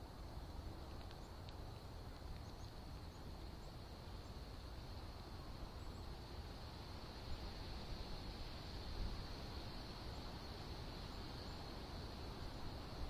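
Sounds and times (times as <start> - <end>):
faint bird chirps: 0.0 - 6.4, 9.7 - 13.0
low rumble and hiss: 0.0 - 13.0.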